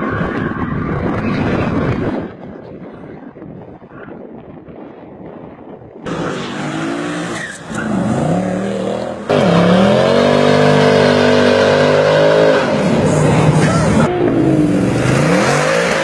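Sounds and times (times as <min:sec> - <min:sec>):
car engine accelerating hard: 0:06.1 - 0:16.0.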